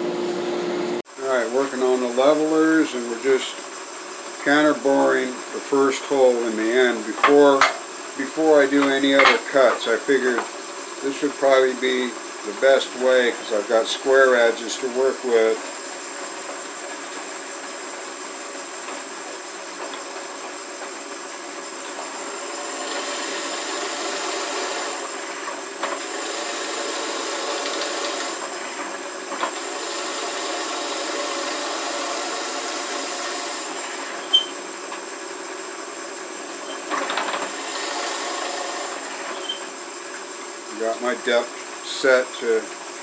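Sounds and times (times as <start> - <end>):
drill press whining: 0.0 - 43.0
bit cutting into wood: 25.9 - 28.5, 29.4 - 34.5, 37.5 - 39.6.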